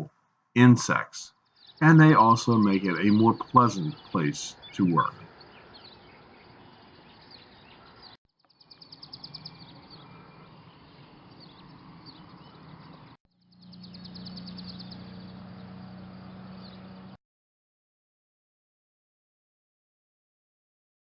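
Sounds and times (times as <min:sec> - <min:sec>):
songbirds chirping and whistling: 0:00.9 - 0:17.1
rapid bird trill: 0:01.4 - 0:17.1.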